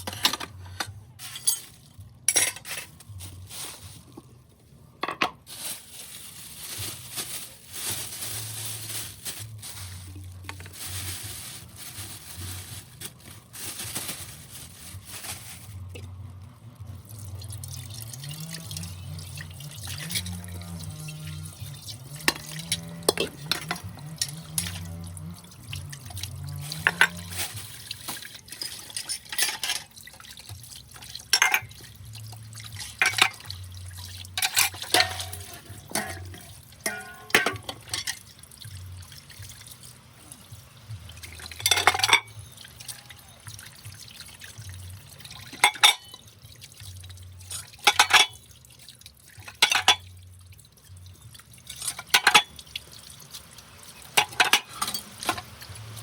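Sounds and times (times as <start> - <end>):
water splashing and dripping: 5.5 - 56.0.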